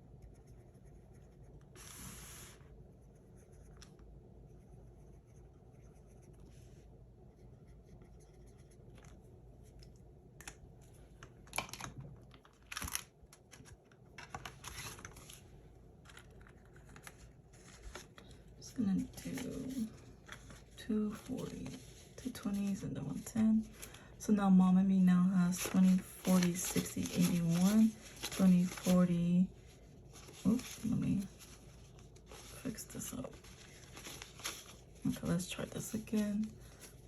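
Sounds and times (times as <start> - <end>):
paper banknotes rustling: 25.5 - 29.2, 30.1 - 37.0.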